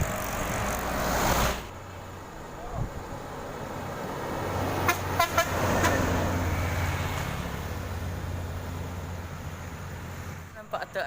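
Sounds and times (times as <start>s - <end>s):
truck horn short toots: 4.8s - 6.0s.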